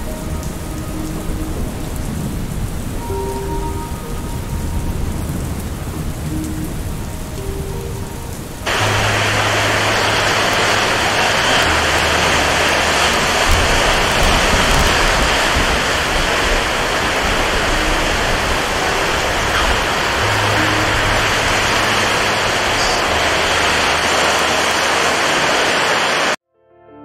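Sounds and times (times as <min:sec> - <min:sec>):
hissing downpour: 0:00.0 - 0:26.4
steady rain: 0:00.0 - 0:26.4
low rumble: 0:08.6 - 0:25.7.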